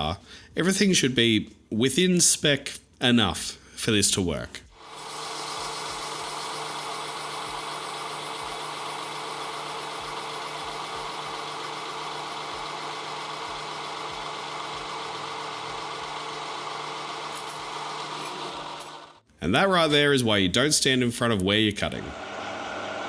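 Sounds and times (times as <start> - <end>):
metal lathe running: 4.8 - 19.2.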